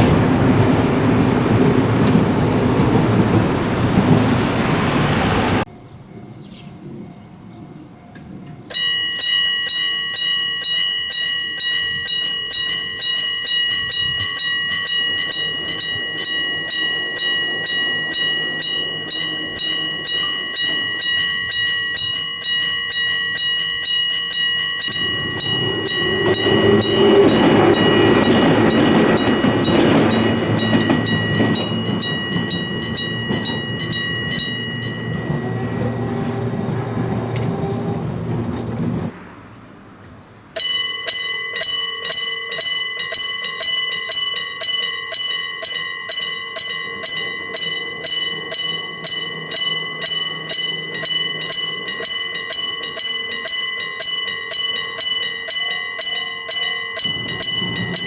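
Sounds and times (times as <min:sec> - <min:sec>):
train rumble: 0:00.0 - 0:05.7, 0:11.6 - 0:40.6, 0:46.4 - 0:58.0
train running past: 0:00.0 - 0:08.7, 0:11.7 - 0:40.6, 0:46.3 - 0:56.0, 0:56.6 - 0:58.0
level-crossing bell ringing: 0:00.0 - 0:38.4, 0:40.6 - 0:58.0.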